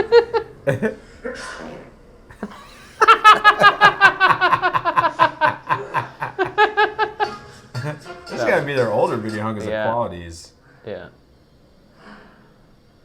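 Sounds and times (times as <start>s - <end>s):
person laughing: 0.0s - 1.0s, 2.3s - 8.0s.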